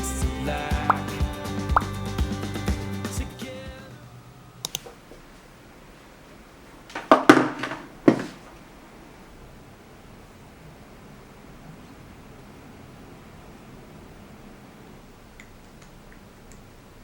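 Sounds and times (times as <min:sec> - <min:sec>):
light clicks: 0:04.6 - 0:05.0
knocks and rustling: 0:06.8 - 0:08.6.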